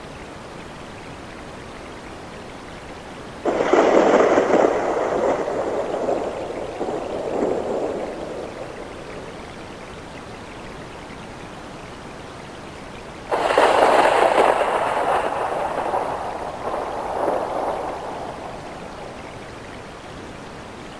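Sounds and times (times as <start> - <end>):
steady rain: 0.0 - 20.9
loud thunderclap: 3.5 - 9.8, 13.3 - 19.7.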